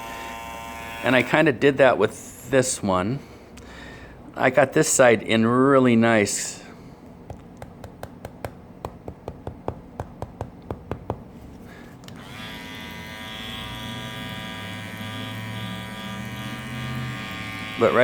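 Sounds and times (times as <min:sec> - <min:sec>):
hair clipper buzzing: 0:00.0 - 0:01.3, 0:12.1 - 0:18.0.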